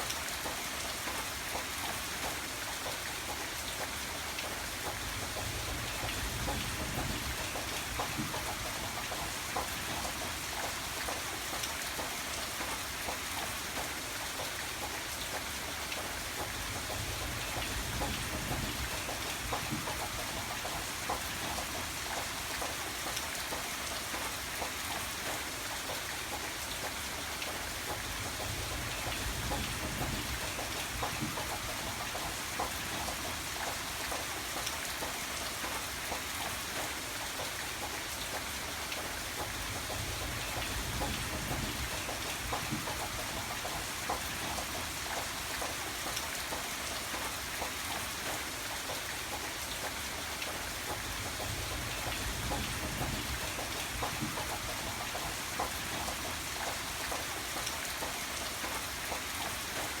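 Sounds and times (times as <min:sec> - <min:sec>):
raindrops ticking on surface: 0:00.0 - 1:00.0
steady rain falling: 0:00.0 - 1:00.0.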